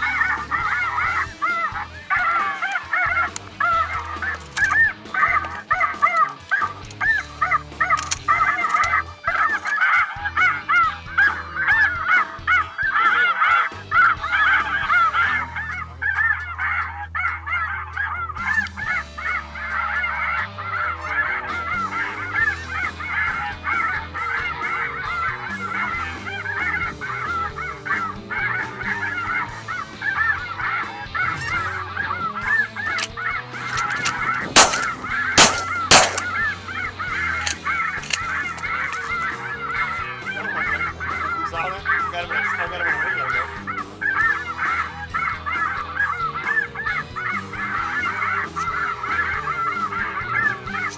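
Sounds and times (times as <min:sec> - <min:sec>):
geese honking: 0:00.0 - 0:50.9
shotgun shots: 0:33.7 - 0:36.7.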